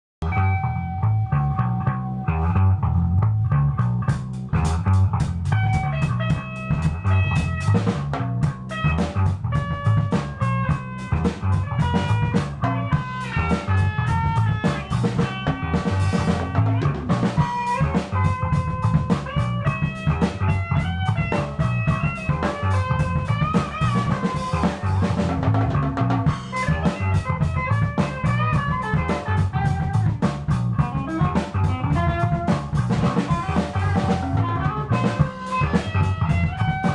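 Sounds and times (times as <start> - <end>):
bass guitar: 0.2 - 36.9
electric guitar riff: 0.2 - 36.9
drum kit steady beat: 4.1 - 36.9.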